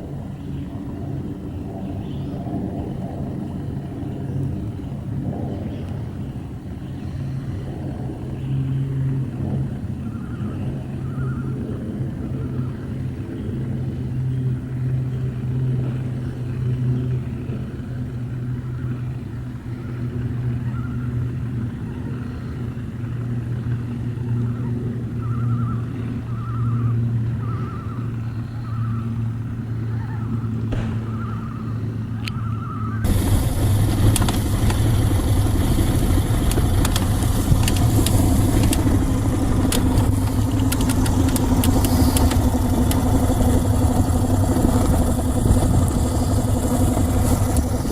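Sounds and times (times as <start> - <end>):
rush of wind and water: 0.0 - 25.2, 31.8 - 47.9
outboard motor humming: 3.7 - 47.9
clatter: 33.1 - 47.9.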